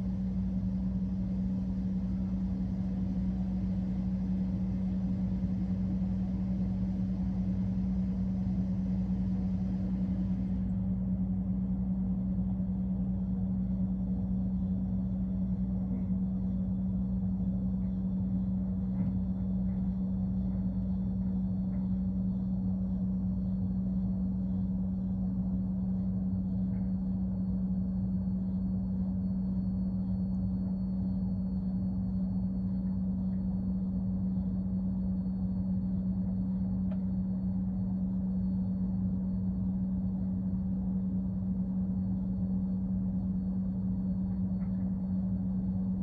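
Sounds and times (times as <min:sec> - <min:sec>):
refrigerator humming: 0:00.0 - 0:46.0
faint ticks: 0:36.8 - 0:37.1.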